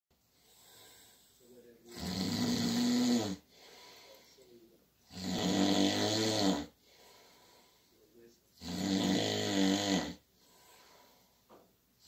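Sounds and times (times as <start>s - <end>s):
quiet breathing: 0.2s - 2.2s, 3.1s - 5.3s, 6.6s - 8.8s, 10.0s - 12.0s
man snoring loudly: 1.8s - 3.5s, 5.1s - 6.8s, 8.6s - 10.2s.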